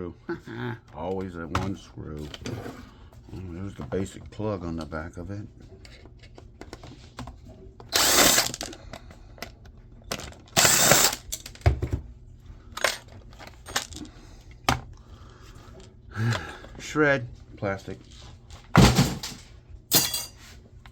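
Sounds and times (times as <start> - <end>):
power drill running: 7.9 - 8.8, 10.6 - 11.3.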